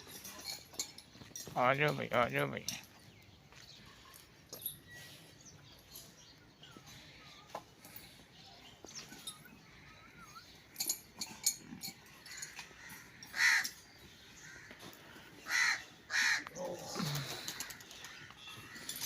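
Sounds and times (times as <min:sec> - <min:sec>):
faint bird chirping: 0:02.9 - 0:13.3
bird cawing: 0:12.3 - 0:13.8, 0:14.4 - 0:16.8.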